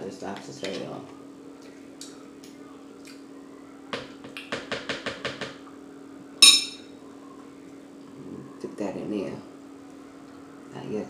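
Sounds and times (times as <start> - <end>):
ringing clink on a dish: 6.4 - 6.8.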